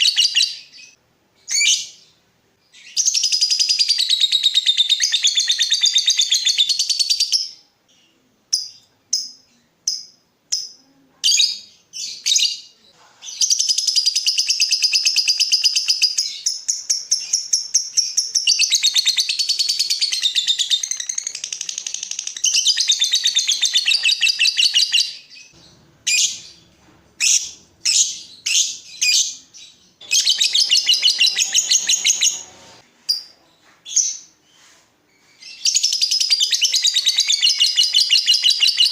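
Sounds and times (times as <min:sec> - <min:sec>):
lovebird chirps: 0:00.0 - 0:38.9
lovebird rapid chattering: 0:30.0 - 0:32.5.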